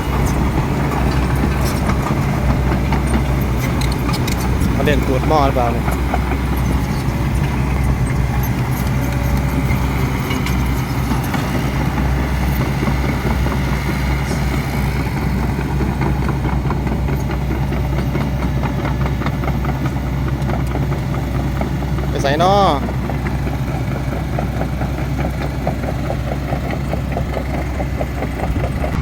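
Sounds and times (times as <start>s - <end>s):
light clanks and rattles: 0.0s - 15.2s
excavator diesel engine running: 0.0s - 29.0s.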